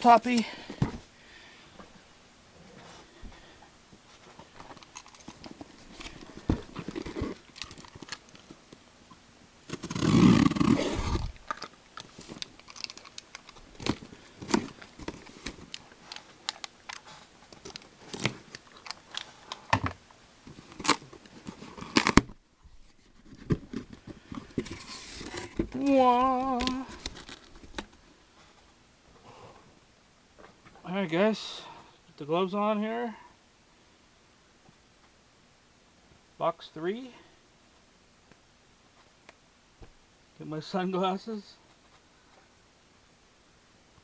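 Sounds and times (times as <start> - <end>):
packaging crinkling: 4.5 - 8.6, 9.7 - 19.7, 20.5 - 22.3, 23.1 - 28.0.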